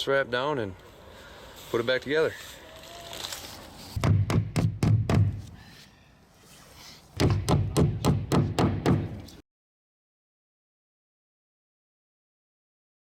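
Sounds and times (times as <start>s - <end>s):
tool knocking on wall: 4.0s - 5.4s, 7.2s - 9.2s.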